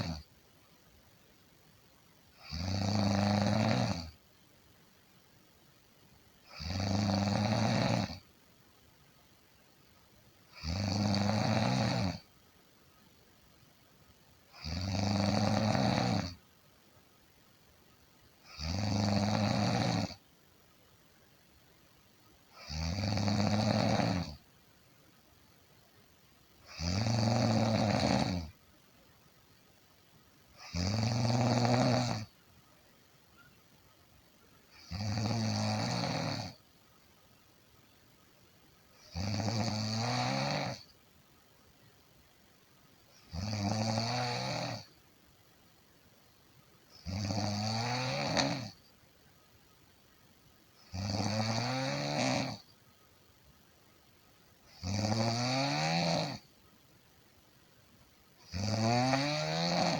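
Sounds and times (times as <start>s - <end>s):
person snoring: 2.4s - 4.2s, 6.5s - 8.2s, 10.5s - 12.2s, 14.5s - 16.4s, 18.5s - 20.2s, 22.6s - 24.4s, 26.6s - 28.5s, 30.6s - 32.3s, 34.8s - 36.6s, 39.0s - 40.9s, 43.3s - 44.9s, 47.0s - 48.8s, 50.8s - 52.6s, 54.8s - 56.4s, 58.4s - 59.9s.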